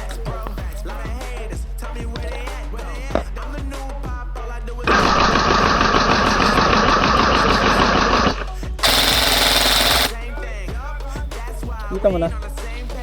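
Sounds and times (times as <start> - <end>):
background music: 0.0 - 13.0
airsoft gun firing bursts: 4.9 - 10.2.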